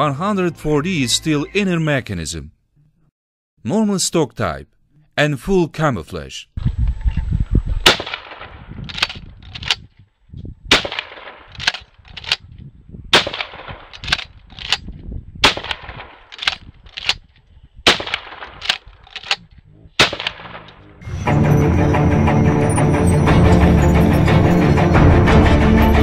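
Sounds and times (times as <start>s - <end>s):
shotgun shots with echo: 7.8s - 8.7s, 10.7s - 11.5s, 13.1s - 14.2s, 15.4s - 16.6s, 17.8s - 18.8s, 20.0s - 20.8s.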